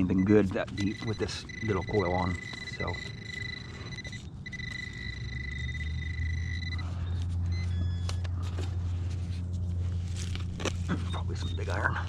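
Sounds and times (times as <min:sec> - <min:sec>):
metal detector high-pitched tone: 0:00.0 - 0:08.1.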